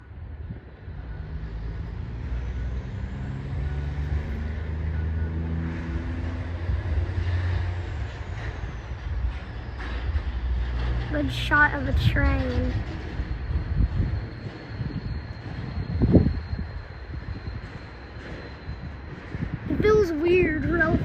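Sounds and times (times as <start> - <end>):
train engine drone: 0.0 - 21.0.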